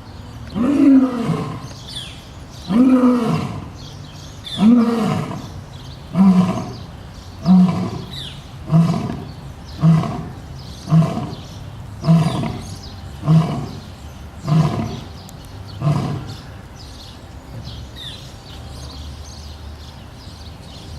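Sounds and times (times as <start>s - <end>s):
lion roaring: 0.5s - 1.8s, 2.7s - 3.8s, 4.6s - 5.5s, 6.1s - 15.1s, 15.8s - 16.4s.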